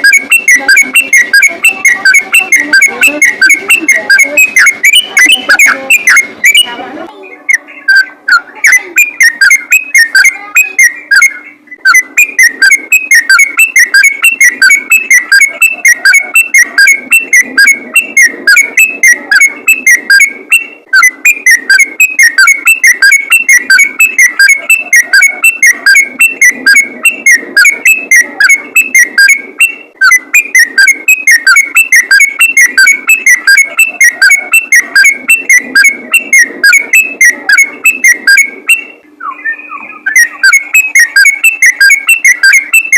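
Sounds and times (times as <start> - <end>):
bird whistled chattering song: 0.0 - 42.9.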